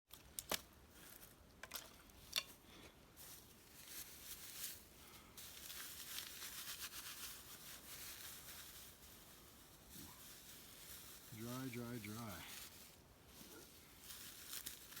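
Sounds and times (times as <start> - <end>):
scratchy hissing strokes: 3.2 - 15.0.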